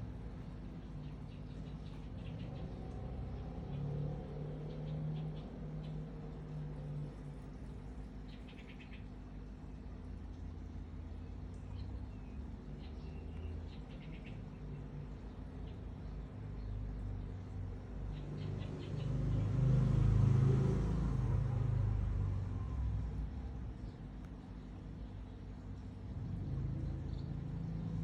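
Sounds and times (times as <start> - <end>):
road vehicle passing: 0.0 - 28.0
faint high bird chirps: 7.6 - 9.8, 10.8 - 16.8.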